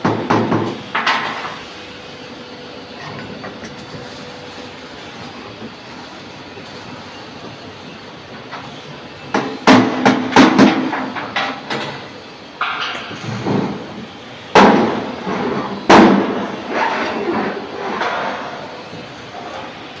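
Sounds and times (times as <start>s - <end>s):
metal clanging blows: 9.4s - 19.7s.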